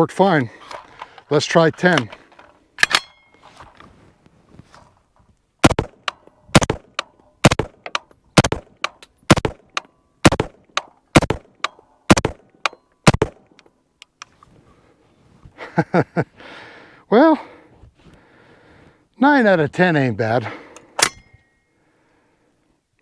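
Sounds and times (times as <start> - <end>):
rifle shots: 5.6 - 13.4.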